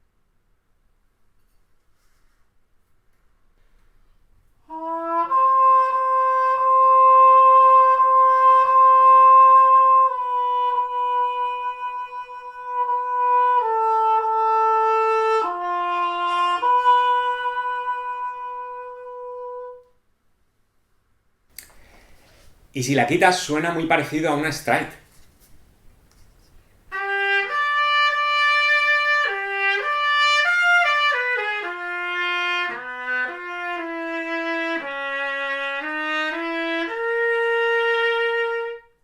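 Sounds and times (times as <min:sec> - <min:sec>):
muted trumpet: 0:04.6 - 0:19.9, 0:26.9 - 0:39.0.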